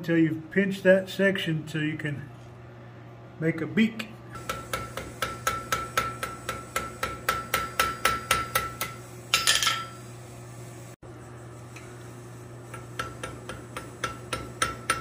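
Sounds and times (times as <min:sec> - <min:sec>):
hammer striking steel on anvil: 0:04.4 - 0:10.0, 0:12.7 - 0:15.0.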